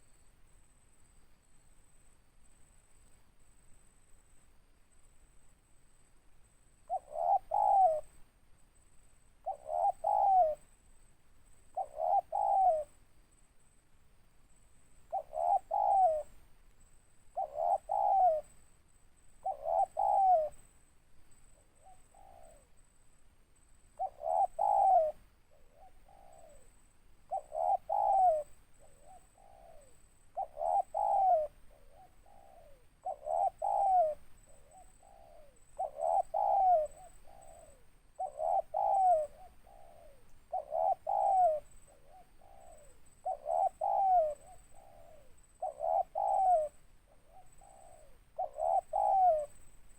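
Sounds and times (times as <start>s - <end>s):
dove cooing: 6.8s - 8.2s, 9.4s - 10.8s, 11.7s - 13.0s, 15.1s - 16.4s, 17.3s - 18.6s, 19.4s - 20.6s, 21.6s - 22.8s, 24.0s - 49.6s.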